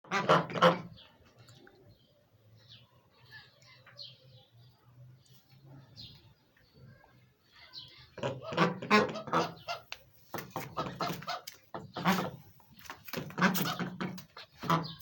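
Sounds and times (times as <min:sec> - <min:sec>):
ducks quacking: 0:00.0 - 0:01.0, 0:08.1 - 0:12.5, 0:13.2 - 0:15.0.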